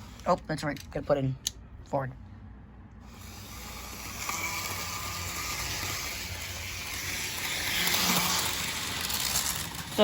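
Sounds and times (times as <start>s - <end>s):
model train motor whirring: 3.0s - 10.0s
wheels rattling over rails: 3.0s - 10.0s.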